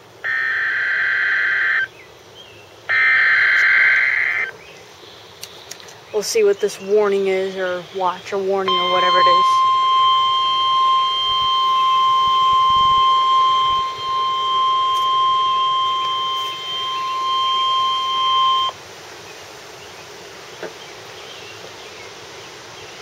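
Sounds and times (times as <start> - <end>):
faint radio hiss: 0.0 - 23.0
loud steady alert beep: 8.7 - 18.7.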